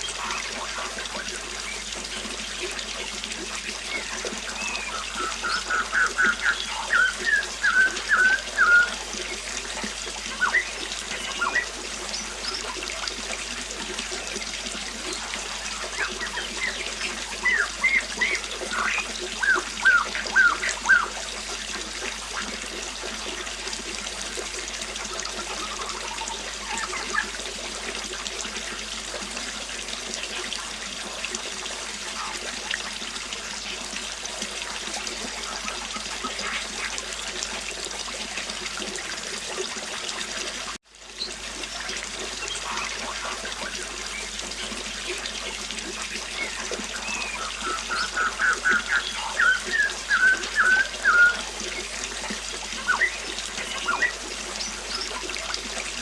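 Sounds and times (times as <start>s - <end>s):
songbirds chirping: 3.5s - 12.9s, 15.1s - 21.2s, 46.0s - 51.9s
river water rushing: 3.8s - 12.8s, 46.1s - 56.0s.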